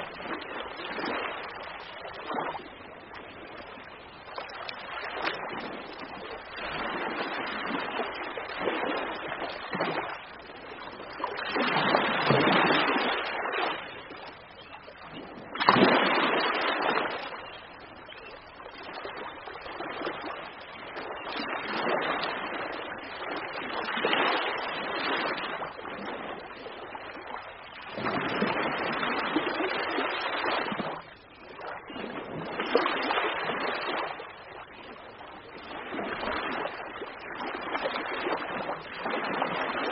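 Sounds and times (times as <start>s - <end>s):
ocean waves breaking: 0.0s - 14.4s, 15.2s - 17.9s.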